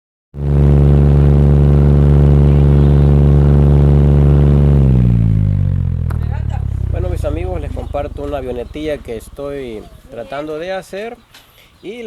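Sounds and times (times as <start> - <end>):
electric fan drone: 0.4 - 10.7.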